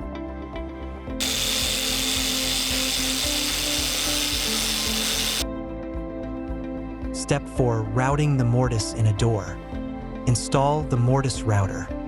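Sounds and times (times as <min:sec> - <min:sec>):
electric grinder cutting wood: 0:01.2 - 0:05.4.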